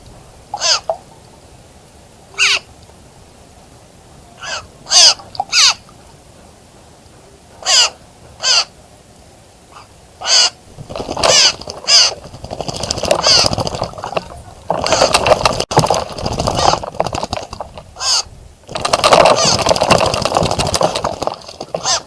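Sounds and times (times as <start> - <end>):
harsh cawing bird calls: 0.6 - 0.9, 2.4 - 2.7, 4.4 - 5.8, 7.6 - 8.7, 9.8 - 10.6, 11.2 - 12.2, 13.0 - 13.6, 18.0 - 18.3, 21.7 - 22.0.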